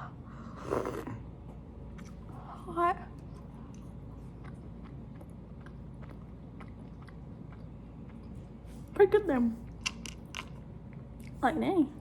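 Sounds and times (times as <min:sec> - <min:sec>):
person chewing: 0:03.2 - 0:09.0.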